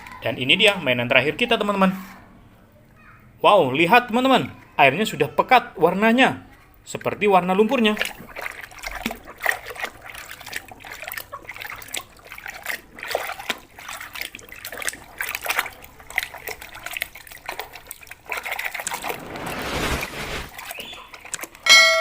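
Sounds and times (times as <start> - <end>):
water splashing and trickling: 6.9 - 21.7
rush of water: 18.2 - 20.9.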